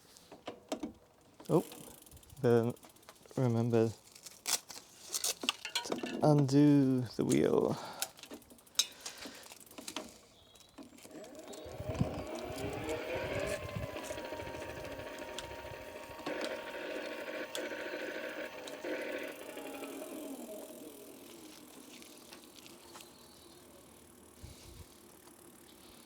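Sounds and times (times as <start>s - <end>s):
electric motor whine: 11.0s - 26.0s.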